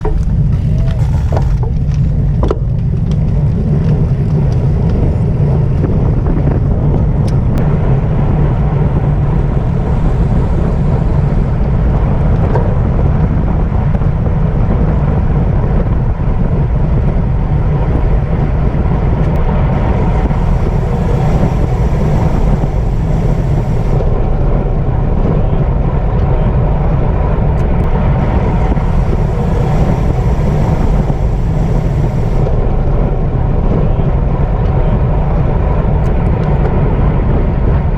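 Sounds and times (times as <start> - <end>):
wind buffeting microphone: 0.0 - 37.9.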